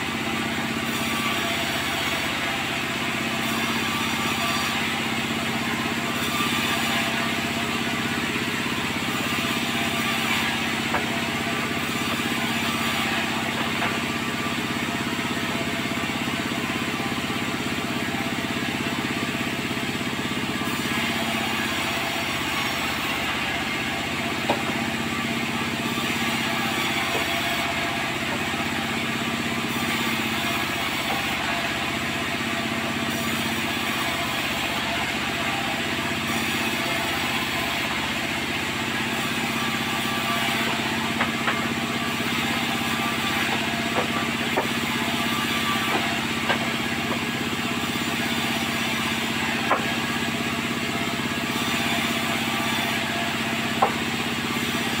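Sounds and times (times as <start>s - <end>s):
sawmill machinery humming: 0.0s - 55.0s.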